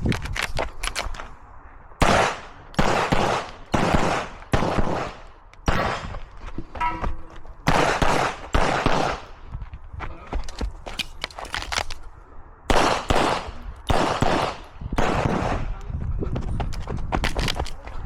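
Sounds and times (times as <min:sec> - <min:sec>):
pistol shots with echo: 0:02.0 - 0:06.2, 0:07.6 - 0:09.4, 0:12.7 - 0:15.8.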